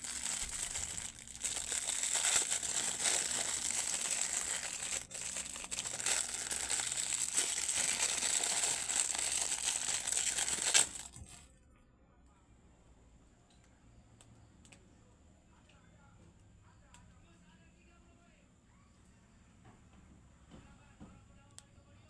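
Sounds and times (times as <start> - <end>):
packaging crinkling by hand: 0.0 - 11.5.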